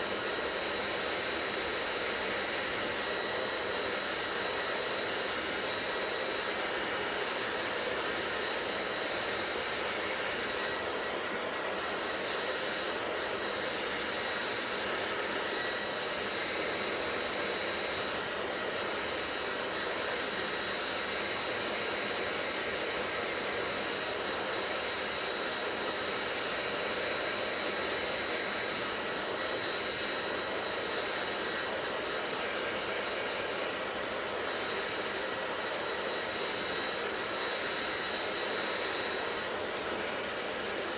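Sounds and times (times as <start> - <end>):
hair dryer running: 0.0 - 40.9.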